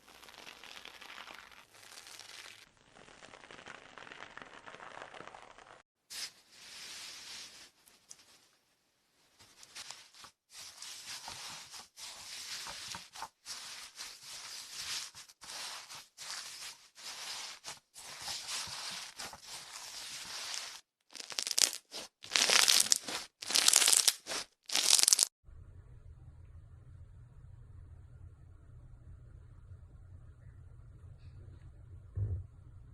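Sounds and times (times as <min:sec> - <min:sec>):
slime crackling and crunching: 0:00.0 - 0:05.8, 0:09.6 - 0:25.3.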